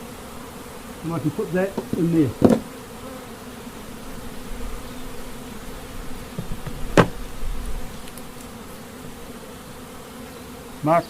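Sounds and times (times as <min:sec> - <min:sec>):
honeybees buzzing: 0:00.0 - 0:11.0
sharp knock: 0:06.4 - 0:07.2.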